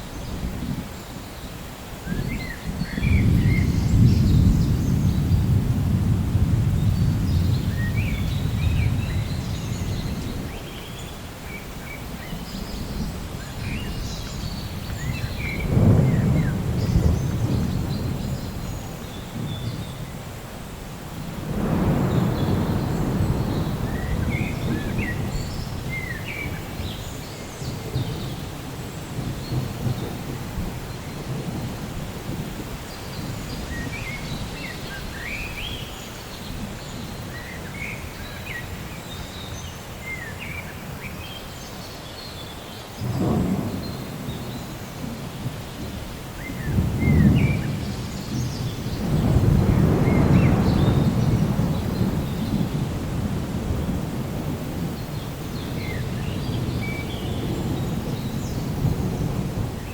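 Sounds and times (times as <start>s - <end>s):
rain hiss: 0.0s - 59.9s
thunder rolling: 2.0s - 10.6s, 14.8s - 19.9s, 21.0s - 35.4s, 43.0s - 59.9s.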